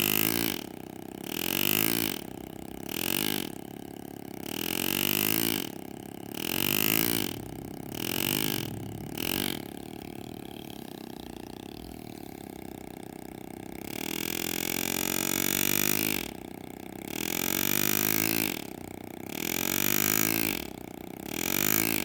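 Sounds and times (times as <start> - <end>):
pneumatic engraving tool buzzing: 0.0 - 22.0
steady hum: 5.5 - 17.6.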